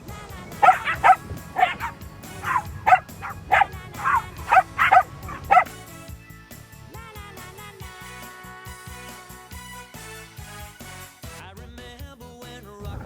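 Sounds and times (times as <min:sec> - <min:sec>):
small dogs yapping: 0:00.5 - 0:05.8.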